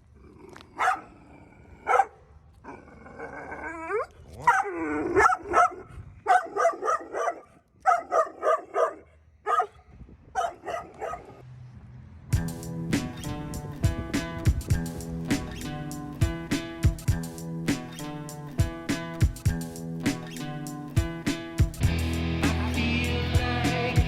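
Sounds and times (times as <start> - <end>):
dog barking: 0.8 - 1.1, 1.8 - 2.2, 3.9 - 9.8, 10.4 - 11.4.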